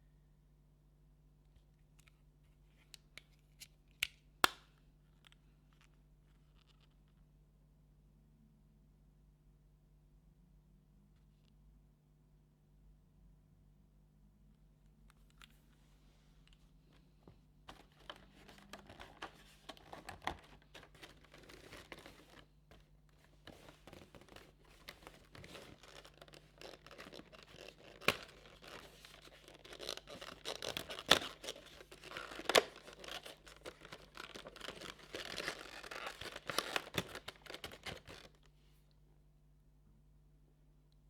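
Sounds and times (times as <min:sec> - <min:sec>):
cardboard and paper being torn: 0:25.2 - 0:38.3.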